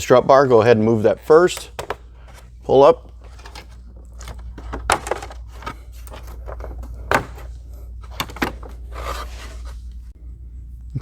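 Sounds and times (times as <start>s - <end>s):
low steady hum: 0.0s - 11.0s
plastic engine cover handled: 1.4s - 10.0s
sharp clicks and knocks: 1.5s - 2.4s, 3.1s - 8.8s.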